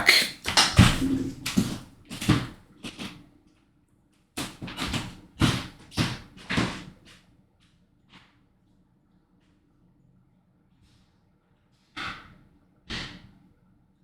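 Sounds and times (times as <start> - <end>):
knocks and thumps in a room: 0.4 - 3.1, 4.4 - 7.2.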